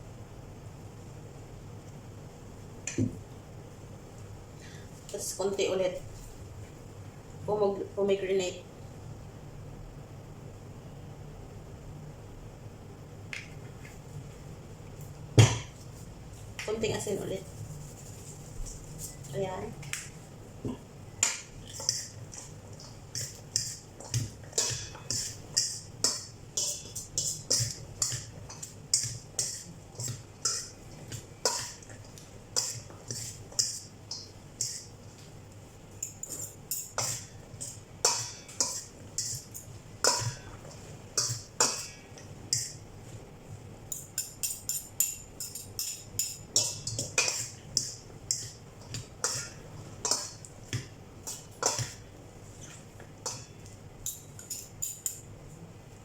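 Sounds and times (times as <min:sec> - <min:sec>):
utensils clinking against a bowl: 0:36.0 - 0:40.6, 0:43.9 - 0:50.5, 0:52.7 - 0:55.3.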